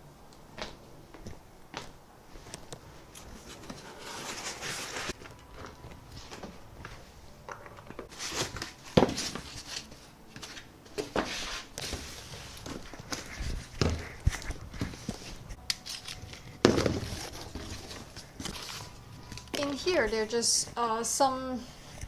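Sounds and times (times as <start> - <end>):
foam packing scraping and rustling: 3.2 - 5.2, 8.0 - 15.6, 16.2 - 19.8.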